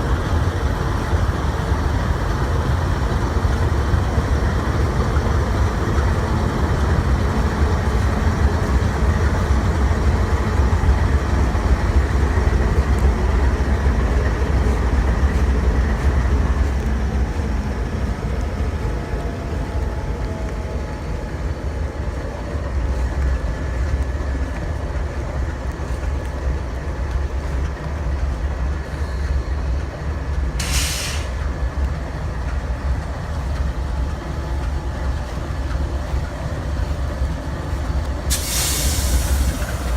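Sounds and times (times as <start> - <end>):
freight train rumbling on rails: 0.0 - 39.9
brief hiss: 30.6 - 31.4, 38.3 - 39.9.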